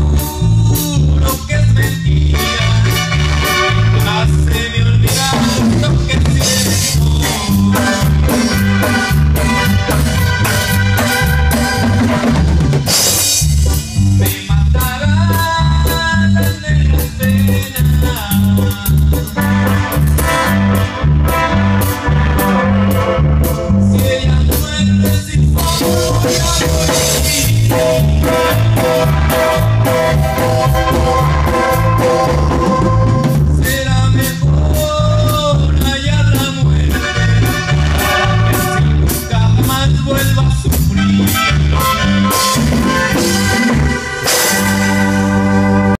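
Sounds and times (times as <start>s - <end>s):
steady drum beat: 0.0s - 45.8s
bouncing bass line: 0.0s - 46.0s
melody instruments: 25.7s - 33.6s, 40.9s - 46.0s.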